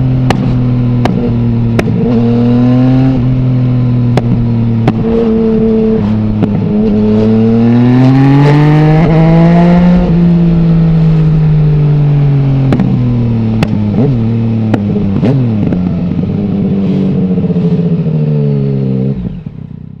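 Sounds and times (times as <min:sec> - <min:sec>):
motorcycle engine revving: 0:00.0 - 0:20.0
exhaust pops and crackles: 0:00.2 - 0:02.2, 0:04.1 - 0:05.4, 0:06.0 - 0:07.0, 0:12.6 - 0:16.2.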